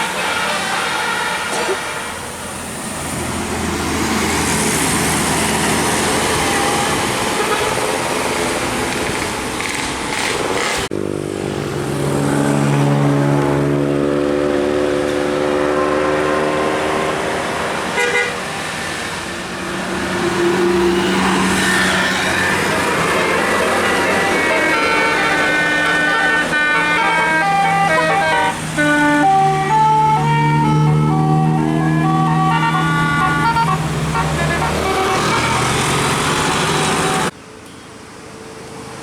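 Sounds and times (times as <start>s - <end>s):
bus musical air horn: 0.0s - 2.4s, 6.4s - 8.3s, 17.9s - 18.7s, 20.3s - 37.3s
passing road traffic: 0.0s - 39.0s.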